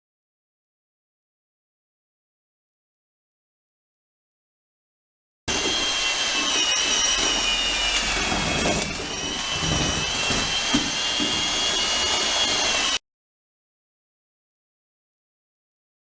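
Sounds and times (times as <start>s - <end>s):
mortar mixer motor whine: 5.5s - 13.0s.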